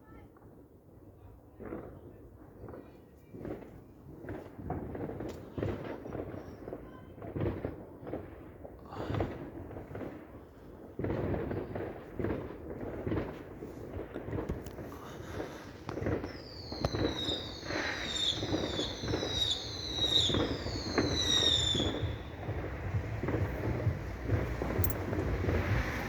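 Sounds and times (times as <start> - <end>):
fireworks popping and banging: 1.2 - 26.0
falling fireworks whistles: 4.2 - 7.7, 10.9 - 26.0.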